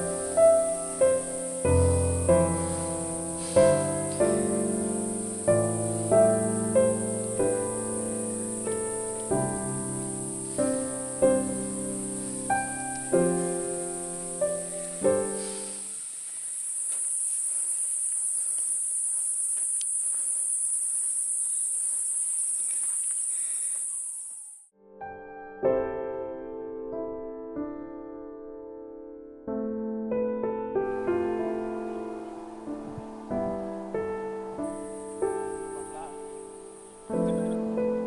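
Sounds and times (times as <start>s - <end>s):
gentle piano music: 0.0s - 16.0s, 24.8s - 38.0s
high-pitched insect chorus: 0.0s - 24.7s, 31.5s - 38.0s.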